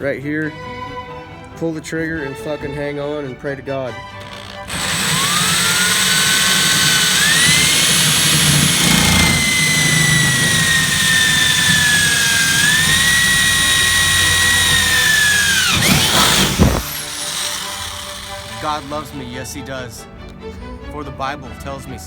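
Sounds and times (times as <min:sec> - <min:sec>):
power drill boring through sheet metal: 0:04.2 - 0:19.3.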